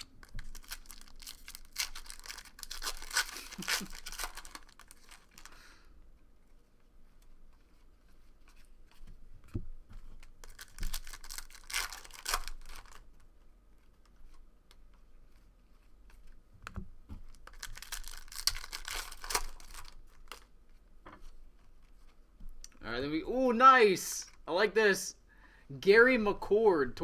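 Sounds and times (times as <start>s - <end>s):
foil wrappers tearing and crinkling: 0.0s - 5.7s, 10.3s - 13.1s, 17.3s - 20.5s.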